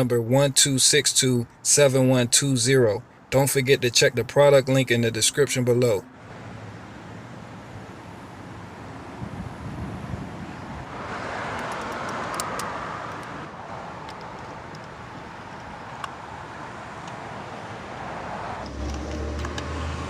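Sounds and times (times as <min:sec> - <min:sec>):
background traffic: 0:00.0 - 0:20.0
vehicle passing: 0:06.0 - 0:20.0.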